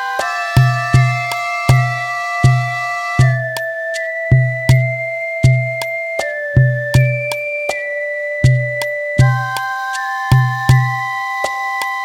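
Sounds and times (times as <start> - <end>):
deep kick drum beat: 0.6 - 3.6, 4.3 - 5.8, 6.6 - 7.3, 8.4 - 9.6.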